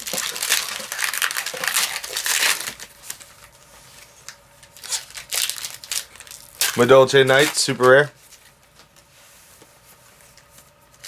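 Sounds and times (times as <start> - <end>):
foil wrapper crinkling and tearing: 0.0 - 3.5, 4.6 - 8.1.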